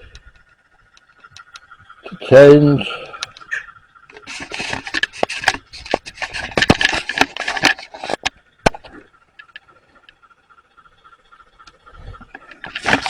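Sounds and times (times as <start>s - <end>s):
scraping and rubbing: 4.1s - 9.0s, 12.4s - 13.0s
sharp clicks and knocks: 4.1s - 10.2s, 11.6s - 13.0s.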